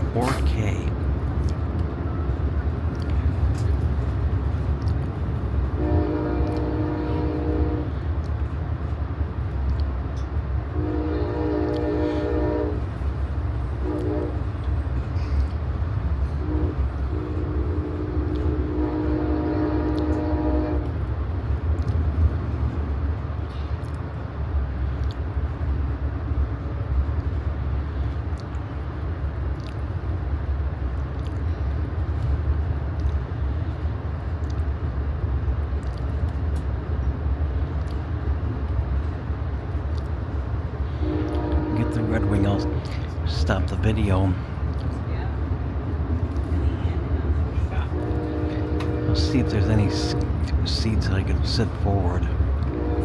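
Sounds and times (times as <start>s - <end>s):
train rumbling on rails: 0.0s - 53.0s
locomotive air horn blasts: 5.7s - 8.0s, 10.7s - 13.0s, 13.8s - 14.6s, 16.3s - 21.0s, 40.8s - 43.1s, 47.9s - 50.5s, 52.6s - 53.0s.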